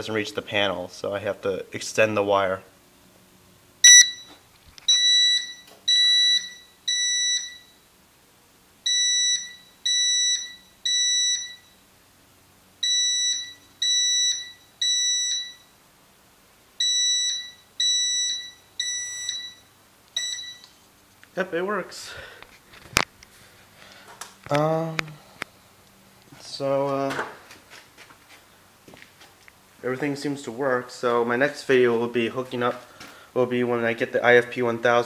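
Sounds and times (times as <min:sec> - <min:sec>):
fire alarm beeping: 0:03.8 - 0:07.9, 0:08.8 - 0:11.9, 0:12.8 - 0:15.8, 0:16.8 - 0:20.8.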